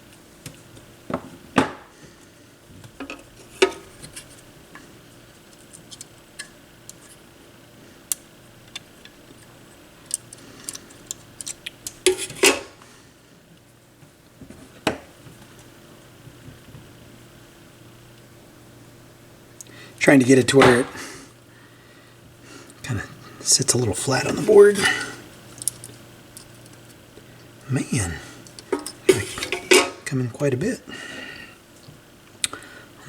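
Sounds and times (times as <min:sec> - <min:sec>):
metal tools clinking: 0:28.8 - 0:30.0.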